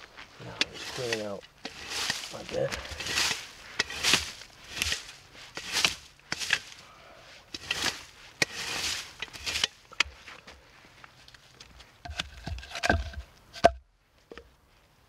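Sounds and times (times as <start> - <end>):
swishing and scraping sweeping: 0.6 - 6.8, 7.5 - 9.7.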